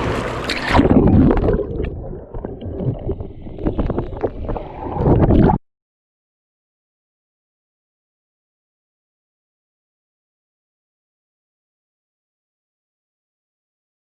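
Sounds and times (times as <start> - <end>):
water splashing: 0.0 - 5.6.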